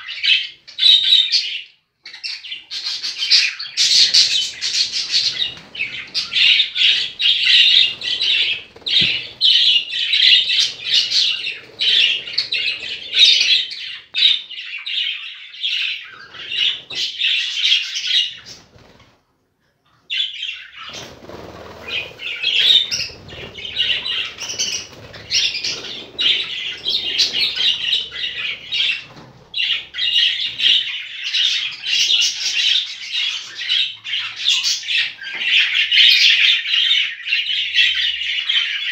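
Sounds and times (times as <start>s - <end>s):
budgerigars chattering and squawking: 0.0s - 18.7s, 20.1s - 38.9s.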